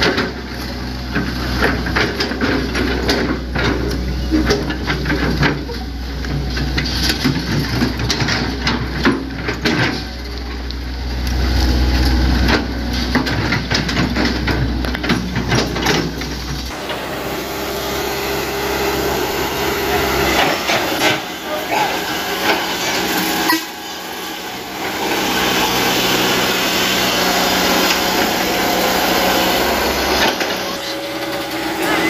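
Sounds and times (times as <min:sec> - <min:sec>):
excavator diesel engine drone: 0:00.0 - 0:32.0
machine knocks and clanks: 0:12.4 - 0:17.0.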